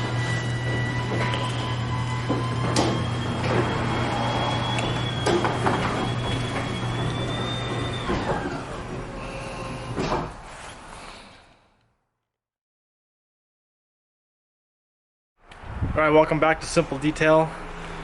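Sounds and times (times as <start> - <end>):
machine humming: 0.0 - 10.2.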